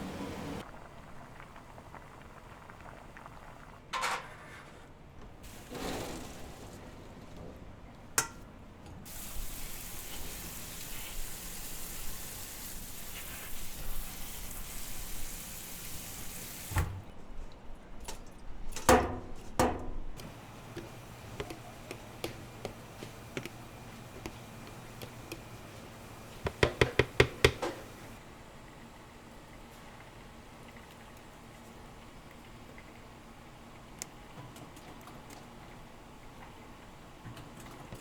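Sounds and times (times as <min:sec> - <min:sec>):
kitchen tap running: 0:09.1 - 0:16.9, 0:20.2 - 0:28.2.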